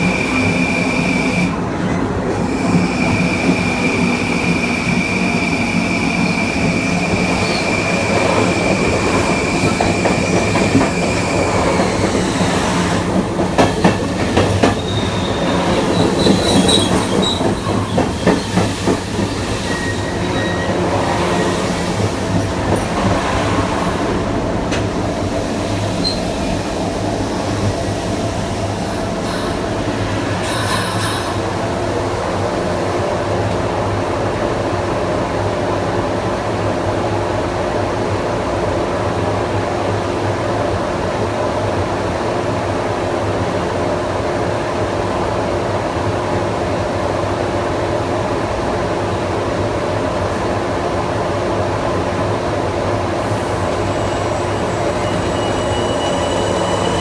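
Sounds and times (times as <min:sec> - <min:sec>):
train rolling noise: 0:00.0 - 0:57.0
wheel squeals: 0:14.6 - 0:20.9, 0:26.0 - 0:26.3, 0:53.7 - 0:57.0.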